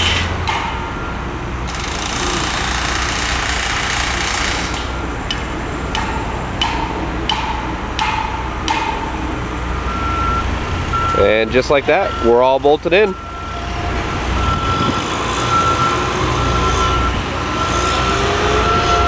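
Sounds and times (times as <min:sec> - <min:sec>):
heavy engine hum: 0:00.0 - 0:19.0.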